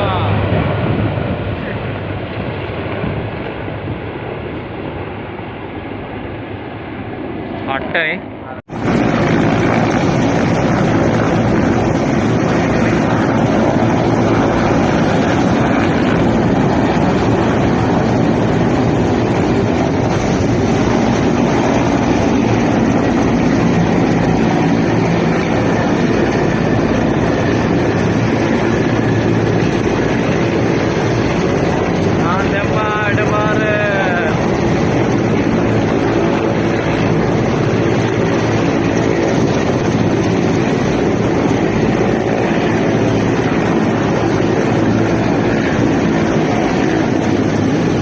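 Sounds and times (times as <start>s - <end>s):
aircraft engine roaring: 0.0s - 48.0s.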